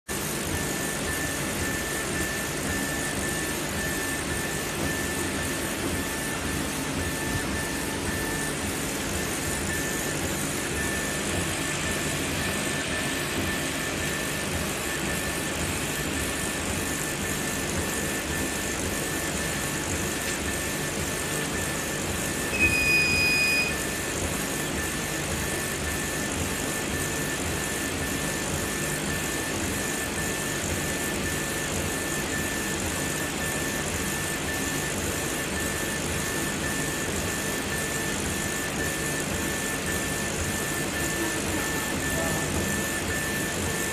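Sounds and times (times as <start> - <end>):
fans and pumps humming: 0.1 - 43.9
short electronic beep: 22.5 - 24.0.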